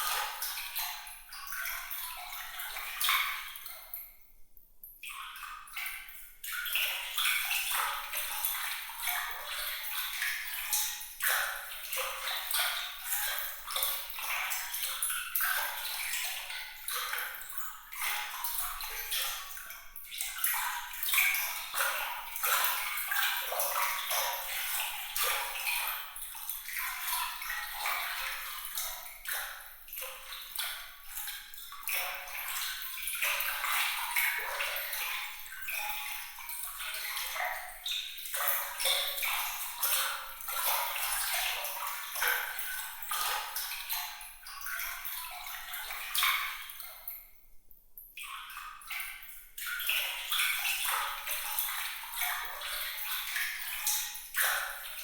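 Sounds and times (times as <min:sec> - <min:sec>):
water trickling and splashing: 0:00.0 - 0:04.2, 0:05.0 - 0:47.4, 0:48.2 - 0:55.0.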